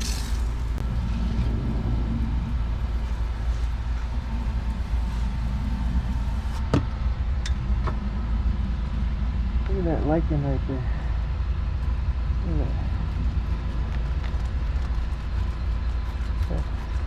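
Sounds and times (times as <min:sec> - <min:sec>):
pressure washer engine drone: 0:00.0 - 0:11.0.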